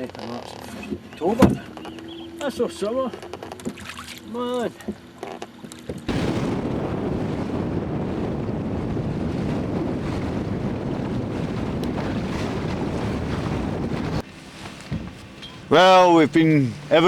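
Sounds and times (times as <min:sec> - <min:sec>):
water washing along hull: 0:00.4 - 0:17.0
wind buffeting microphone: 0:06.1 - 0:17.0.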